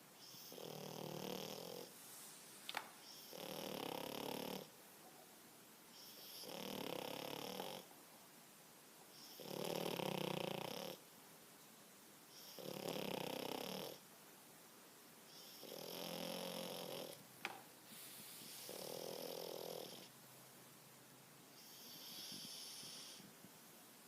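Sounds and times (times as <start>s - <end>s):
dog snoring: 0.2s - 1.9s, 3.0s - 4.8s, 5.9s - 7.9s, 9.1s - 11.0s, 12.3s - 14.0s, 15.3s - 17.2s, 18.4s - 20.1s, 21.6s - 23.3s.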